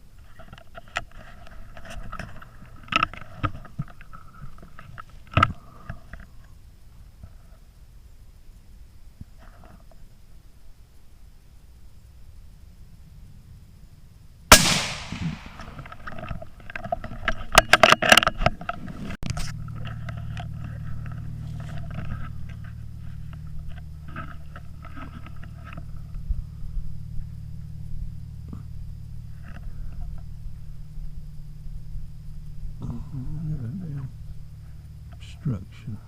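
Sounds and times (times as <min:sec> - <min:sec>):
rustling crackling clatter: 0:00.0 - 0:06.4, 0:14.5 - 0:27.4
steady low hum: 0:00.0 - 0:36.0
rifle shot: 0:14.5 - 0:16.0.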